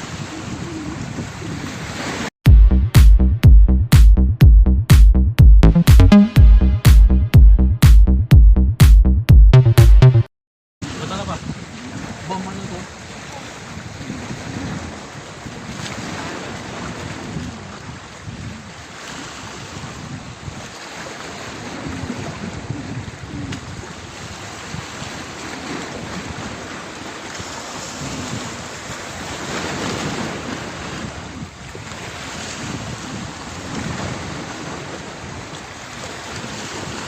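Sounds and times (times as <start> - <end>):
wind buffeting microphone: 0.0 - 2.2, 10.9 - 37.0.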